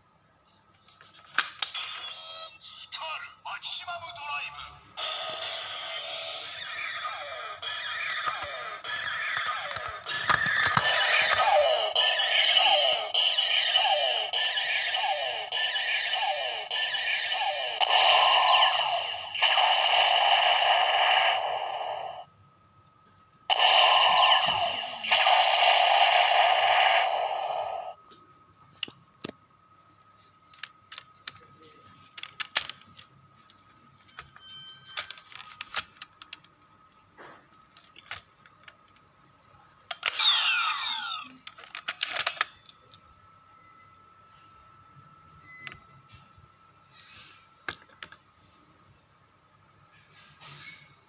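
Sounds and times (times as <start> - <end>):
falling electronic zaps: 5.0 - 22.3, 23.5 - 28.0
loud electronic blasts: 5.0 - 22.3, 23.5 - 28.0
plastic toy clicks: 8.0 - 11.5, 41.4 - 42.8.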